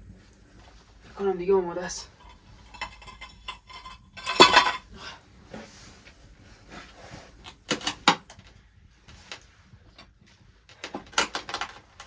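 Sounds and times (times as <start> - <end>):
cookware and utensils clinking: 2.2 - 4.9.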